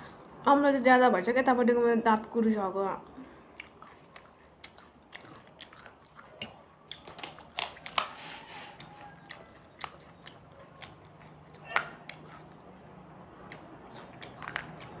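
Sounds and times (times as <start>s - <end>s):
chewing crisp food: 3.0s - 15.0s.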